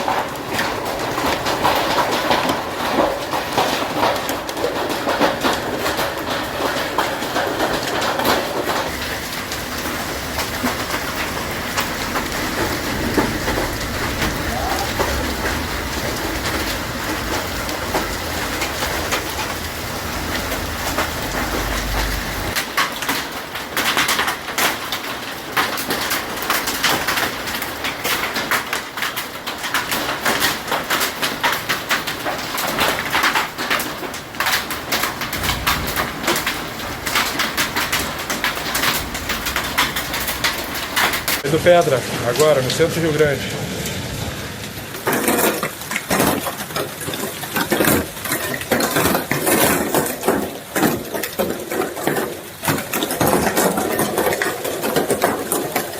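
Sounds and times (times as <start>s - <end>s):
hailstones striking hard surfaces: 0.0s - 55.9s
low rumble: 8.9s - 18.9s, 35.3s - 37.4s.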